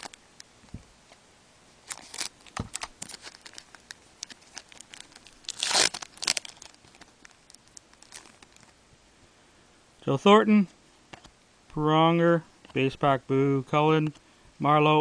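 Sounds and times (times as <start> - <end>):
wrapper tearing and crinkling: 1.8 - 8.8.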